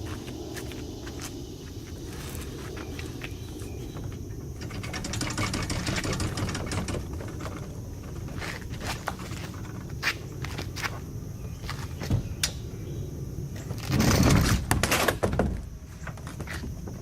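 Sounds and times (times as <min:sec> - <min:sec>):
rumbling scraping burst: 0:04.2 - 0:10.3, 0:13.6 - 0:14.9.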